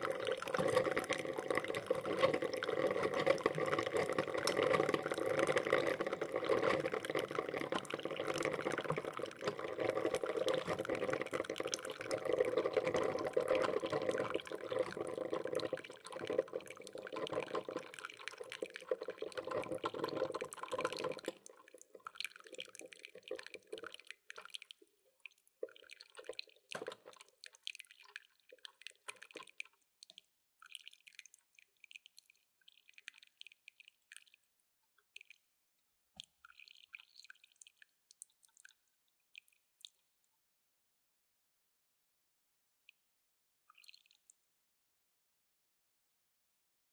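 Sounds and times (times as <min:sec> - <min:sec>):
coffee maker gurgling: 0:00.0 - 0:29.8.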